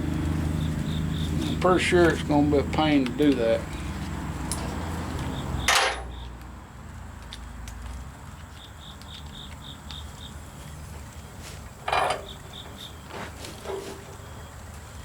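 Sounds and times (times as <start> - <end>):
cricket chirping: 0.2 - 1.8, 5.0 - 6.4, 8.2 - 15.0
sharp metal clank: 5.7 - 6.2, 11.9 - 12.3.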